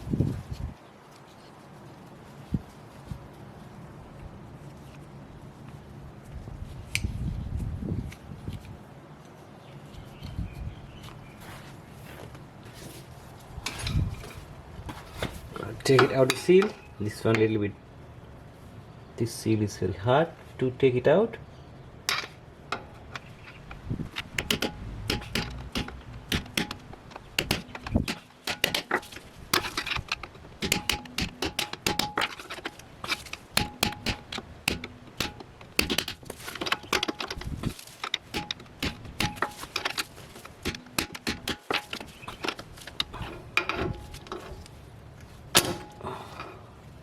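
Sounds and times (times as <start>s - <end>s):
metal tool prying and scraping: 13.6s - 17.0s, 22.1s - 44.7s, 45.6s - 46.0s
sharp metallic clicks: 22.1s - 44.4s.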